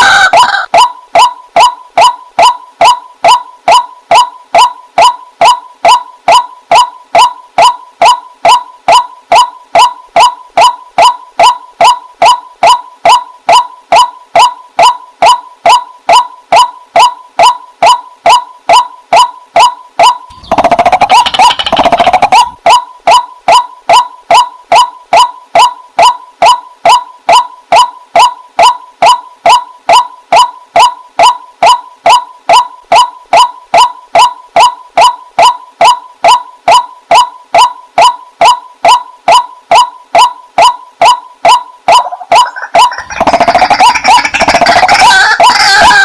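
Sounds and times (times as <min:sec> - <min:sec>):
water hen calling: 0:00.0 - 0:01.7, 0:41.9 - 0:46.0.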